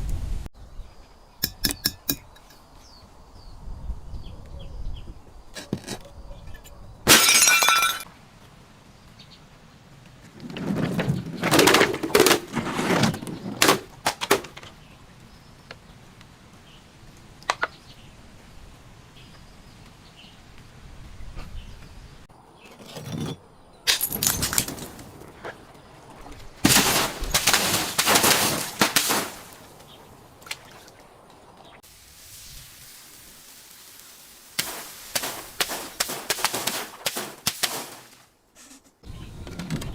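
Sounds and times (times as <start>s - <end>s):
objects cracking and crunching: 26.6s - 29.8s
sharp crack: 26.6s - 30.6s, 34.1s - 38.3s.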